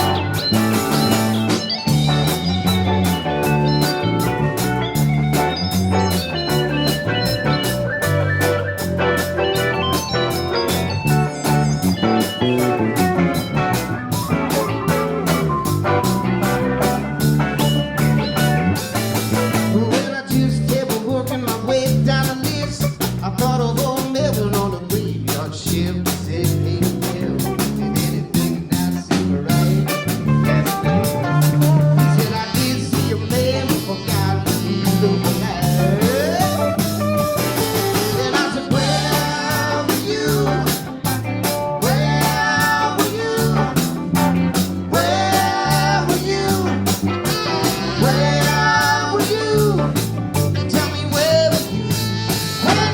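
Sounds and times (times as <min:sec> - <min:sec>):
electric guitar lead lines: 0:00.0 - 0:20.8, 0:26.3 - 0:52.9
bass line: 0:00.0 - 0:52.9
drum kit beat: 0:00.0 - 0:52.9.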